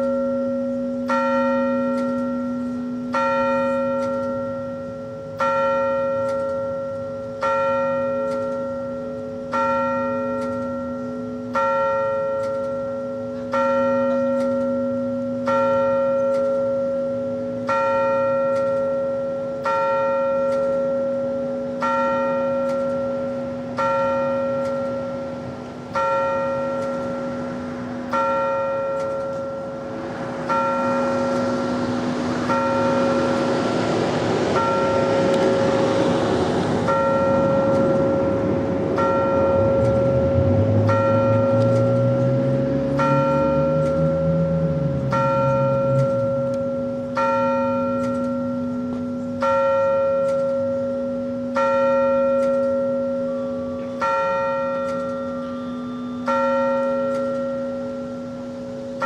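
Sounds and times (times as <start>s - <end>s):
large bell tolling: 0.0s - 59.0s
rushing noise: 23.1s - 51.3s.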